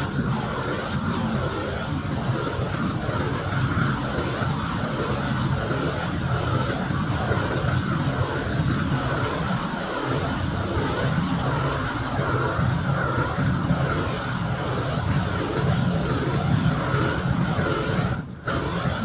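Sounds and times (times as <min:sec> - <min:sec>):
roofing torch roaring: 0:00.0 - 0:19.0.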